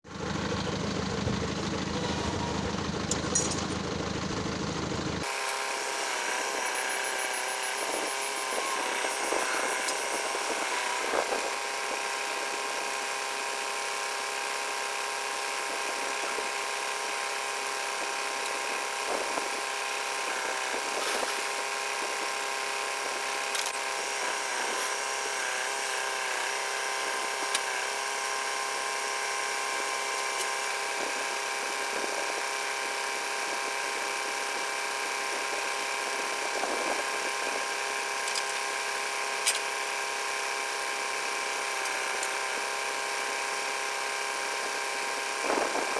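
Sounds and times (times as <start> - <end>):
whining tones: 0.1 - 12.0
motor humming: 0.1 - 45.9.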